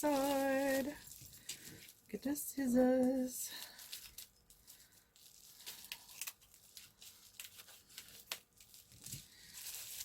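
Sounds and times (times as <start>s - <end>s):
plastic crinkling: 0.0s - 2.3s, 3.0s - 10.0s
scissors snipping plastic packaging: 5.6s - 10.0s.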